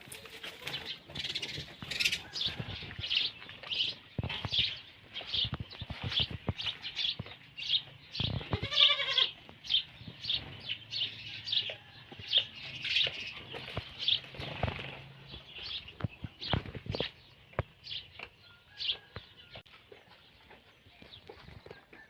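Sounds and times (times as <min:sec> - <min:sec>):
small birds chirping: 0:00.2 - 0:22.0
goat bleating: 0:08.4 - 0:09.4.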